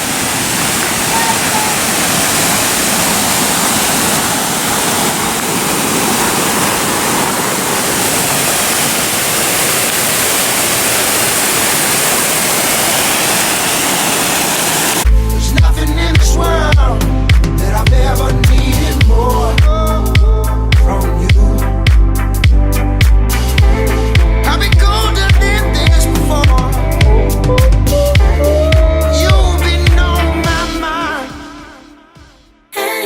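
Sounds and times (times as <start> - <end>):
waterfall rushing: 0.0 - 15.1.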